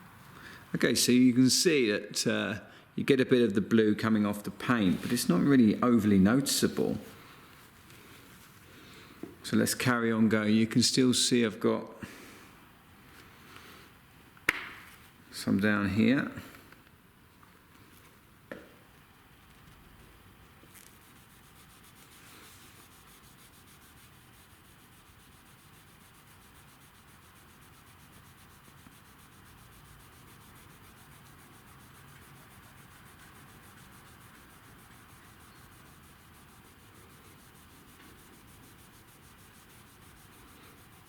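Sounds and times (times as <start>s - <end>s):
cloth rubbing car paintwork: 4.5s - 9.4s, 17.8s - 41.0s.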